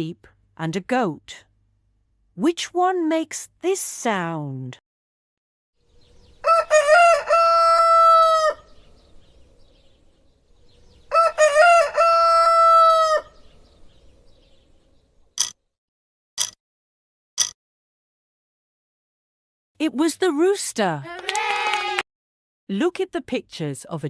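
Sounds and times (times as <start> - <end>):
rooster crowing: 6.4 - 8.7, 11.1 - 13.4.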